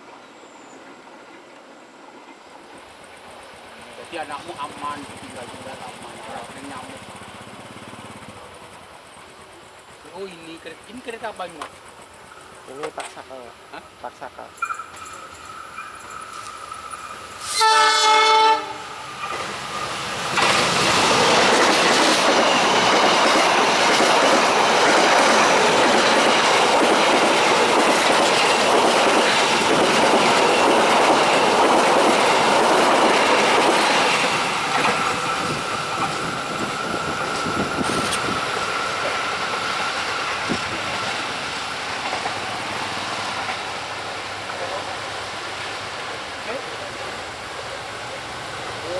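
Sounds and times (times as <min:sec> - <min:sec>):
train wheels clattering on rails: 0:00.8 - 0:48.9
thin steady whine: 0:08.3 - 0:17.6
train horn blast: 0:17.4 - 0:19.0.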